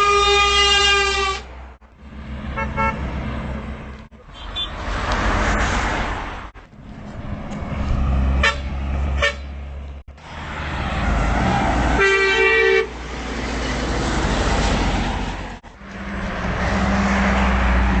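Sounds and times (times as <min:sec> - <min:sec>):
truck horn blast: 0:00.0 - 0:01.6, 0:02.5 - 0:03.2, 0:08.4 - 0:09.6, 0:11.9 - 0:13.0
heavy trucks passing: 0:00.0 - 0:18.0.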